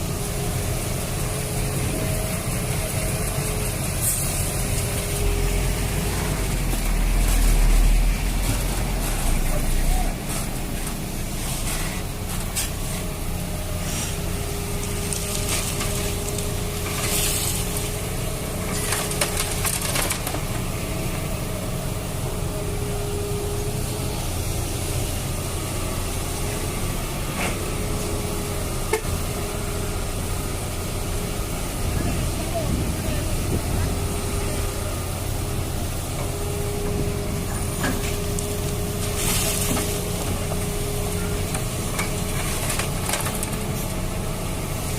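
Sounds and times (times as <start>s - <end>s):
sand scraping and crunching: 0.0s - 19.6s, 20.4s - 44.9s
low rumble: 30.0s - 39.9s.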